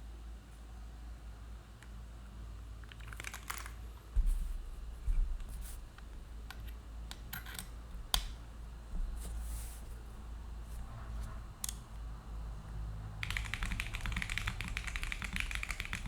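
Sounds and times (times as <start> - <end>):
keyboard typing clicks: 13.2 - 16.0.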